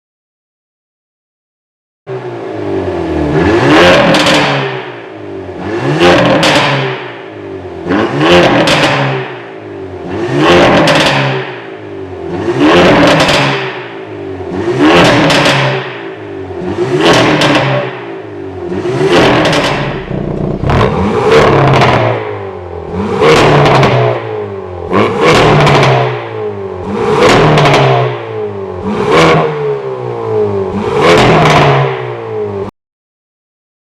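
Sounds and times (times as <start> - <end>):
car engine revving: 2.1 - 32.6
exhaust popping and crackling: 19.1 - 22.3.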